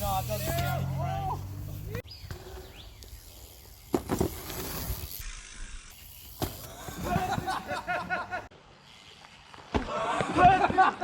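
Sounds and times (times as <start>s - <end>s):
bicycle landing thumps: 3.8s - 5.1s, 6.2s - 7.9s, 9.6s - 10.9s.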